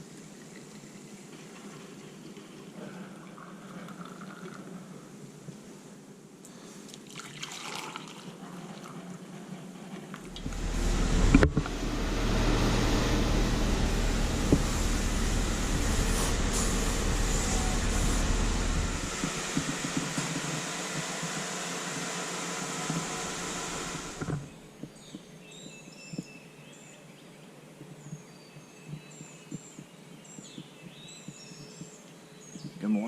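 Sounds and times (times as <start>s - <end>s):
moving vehicle road rumble: 10.2s - 24.8s
songbirds chirping: 24.4s - 33.0s.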